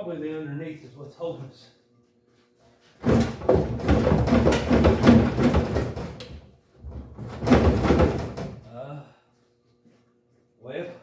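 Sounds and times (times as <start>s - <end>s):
sheet metal rattling and scraping: 3.0s - 8.6s.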